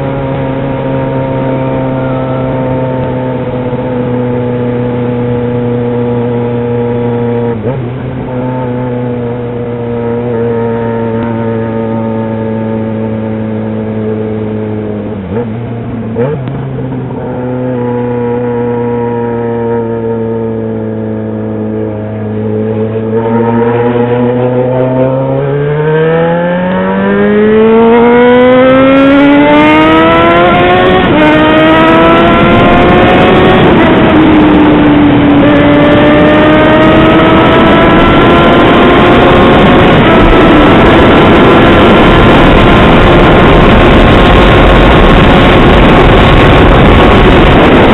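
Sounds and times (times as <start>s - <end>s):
motorcycle engine accelerating: 0.0s - 47.9s
wind noise: 21.8s - 47.9s.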